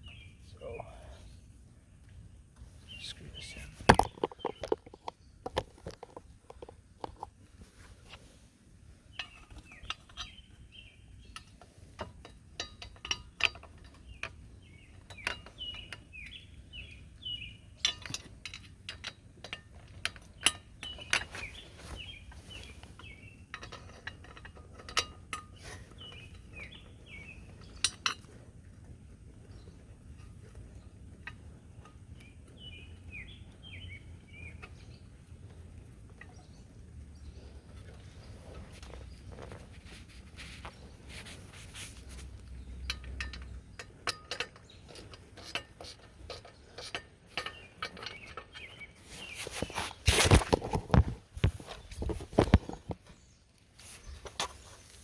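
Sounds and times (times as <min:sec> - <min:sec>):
bird chirping: 0:00.0 - 0:05.5, 0:09.1 - 0:11.6, 0:13.3 - 0:18.0, 0:20.3 - 0:24.0, 0:25.5 - 0:28.0, 0:31.6 - 0:35.5, 0:36.1 - 0:45.6, 0:46.3 - 0:50.6.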